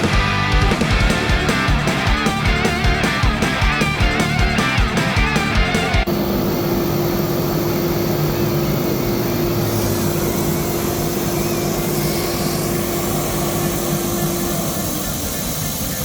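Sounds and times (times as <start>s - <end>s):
dust extraction vacuum rushing: 0.0s - 16.0s
cnc router spindle tone: 6.1s - 16.0s.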